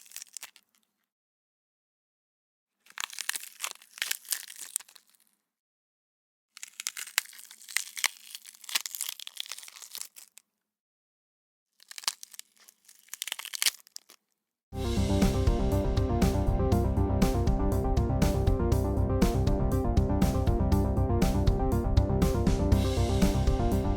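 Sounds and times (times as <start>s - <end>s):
wet bone-breaking crackles and snaps: 0.0s - 0.8s, 2.8s - 5.3s, 6.6s - 10.5s, 11.8s - 14.2s.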